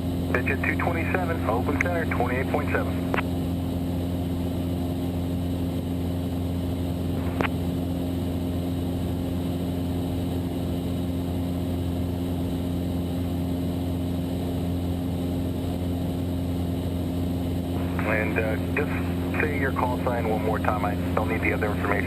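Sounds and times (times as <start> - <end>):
propeller plane engine droning: 0.0 - 22.0.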